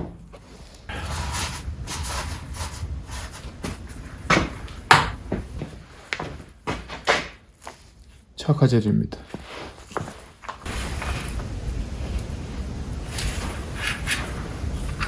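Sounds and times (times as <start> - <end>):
objects knocking and clunking: 0.0 - 0.5, 3.4 - 7.4
rustling: 9.3 - 15.0.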